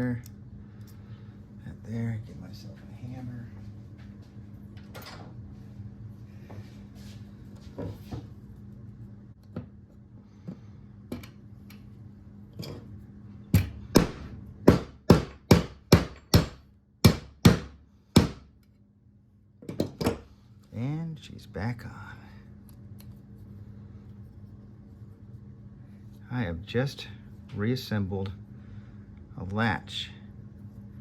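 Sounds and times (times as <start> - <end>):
hammer striking metal parts: 13.5 - 18.4.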